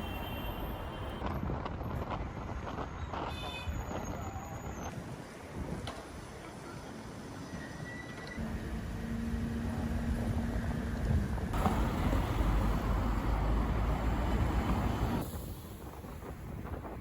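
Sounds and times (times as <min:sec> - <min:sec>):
wind buffeting microphone: 0:10.2 - 0:17.0.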